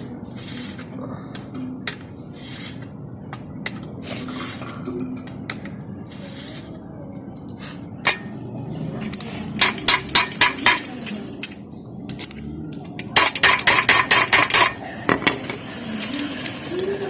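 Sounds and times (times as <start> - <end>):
metal tool tapping metal: 8.0 - 8.4, 9.1 - 12.3, 13.2 - 15.4.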